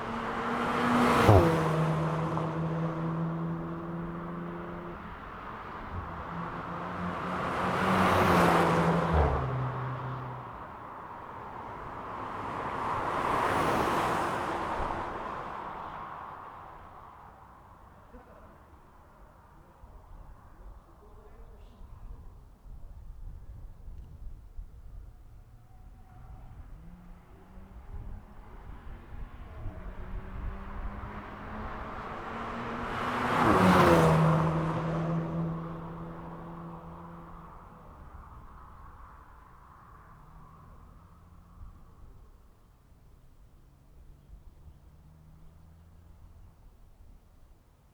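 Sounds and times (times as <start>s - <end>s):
tyre and road noise: 0.0s - 16.6s, 24.8s - 42.3s
car passing by: 0.0s - 17.8s, 25.6s - 42.2s.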